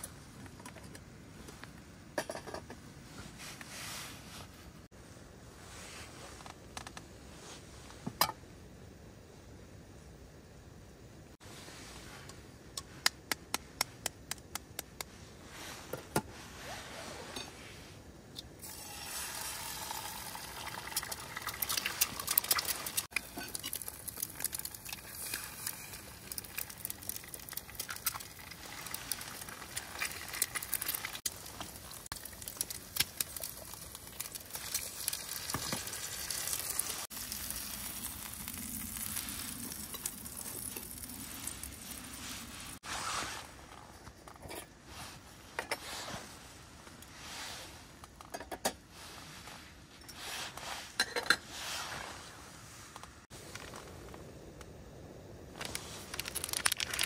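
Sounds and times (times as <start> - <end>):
sizzling hiss with crackles: 15.0 - 43.0.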